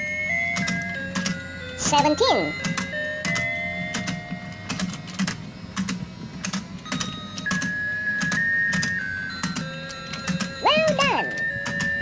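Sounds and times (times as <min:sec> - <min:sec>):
toy mechanism clicking: 0:00.5 - 0:12.0.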